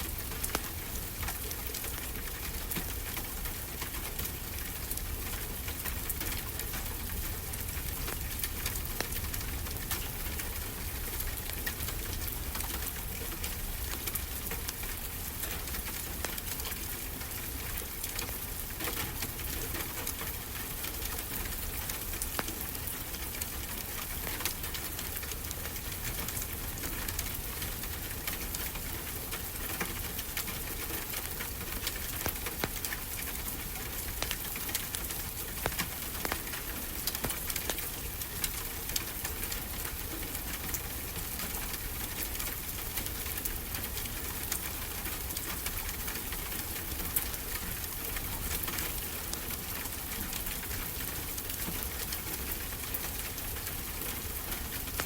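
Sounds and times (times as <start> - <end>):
fireplace crackling and popping: 16.2 - 39.8.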